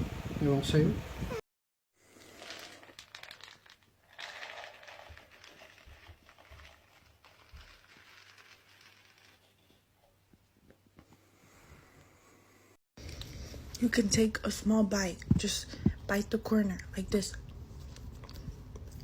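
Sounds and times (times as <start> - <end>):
faint rustling and crinkling: 2.2 - 11.8.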